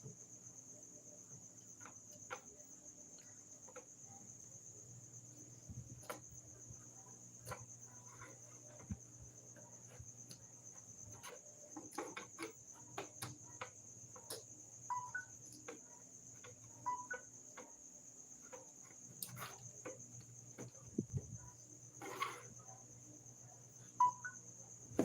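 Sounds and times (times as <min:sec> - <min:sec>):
insects chirring: 0:00.0 - 0:25.0
small clicks and taps: 0:09.8 - 0:17.8.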